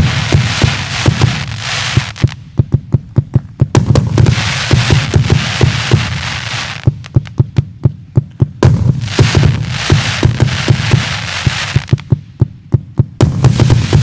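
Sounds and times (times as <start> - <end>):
firework crackling hiss: 0.0 - 2.4, 3.8 - 7.2, 8.6 - 12.1, 13.2 - 14.0
firework bangs: 0.0 - 2.6, 3.7 - 7.7, 8.6 - 12.4, 13.2 - 14.0.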